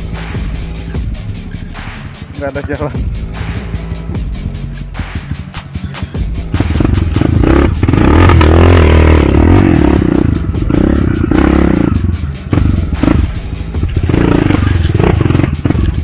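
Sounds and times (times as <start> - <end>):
motorcycle engine revving: 6.0 - 16.0.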